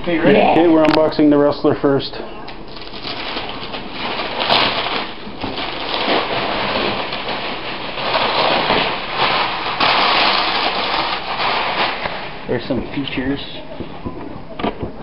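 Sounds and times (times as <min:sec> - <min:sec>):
cardboard box packaging rustling: 0:02.7 - 0:13.3.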